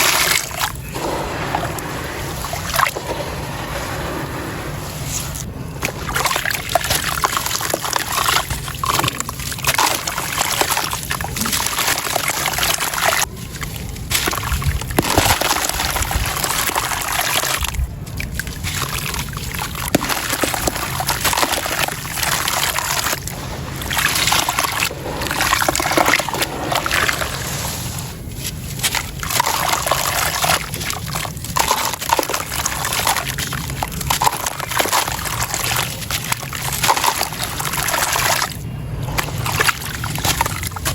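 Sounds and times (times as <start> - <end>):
sand crumbling into water: 0.0 - 8.6, 18.5 - 40.9.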